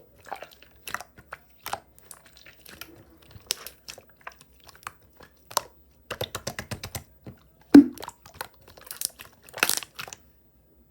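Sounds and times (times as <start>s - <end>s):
slime popping: 7.8s - 8.0s.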